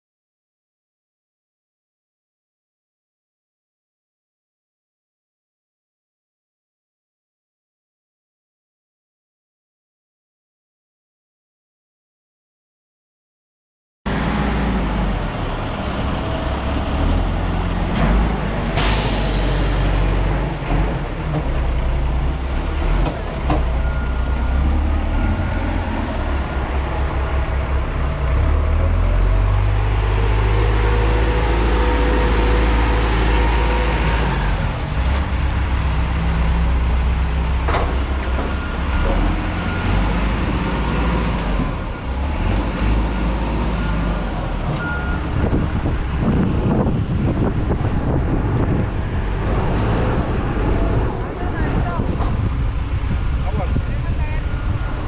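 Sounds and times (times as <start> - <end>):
heavy engine rumbling: 14.1 - 55.0
back-up alarm beeping: 53.1 - 55.0.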